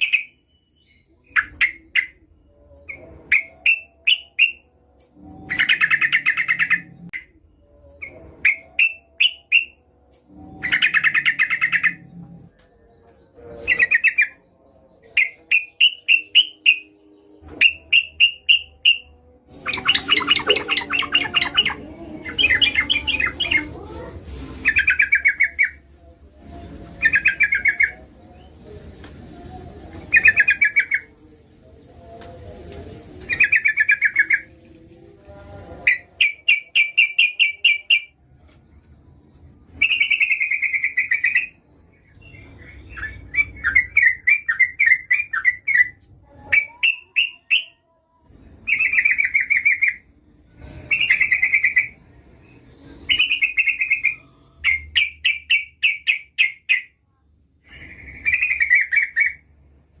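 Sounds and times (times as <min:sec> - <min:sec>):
bird warbling phrase: 0:19.6 - 0:23.8
bird chattering calls: 0:19.7 - 0:23.6.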